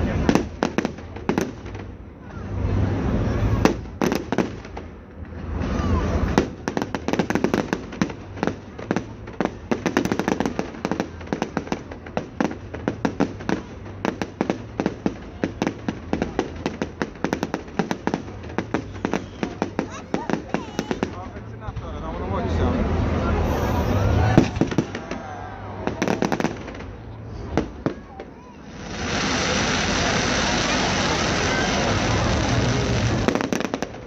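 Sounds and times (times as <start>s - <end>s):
firework bangs and crackles: 0.0s - 34.0s
deep firework booms: 24.2s - 34.0s.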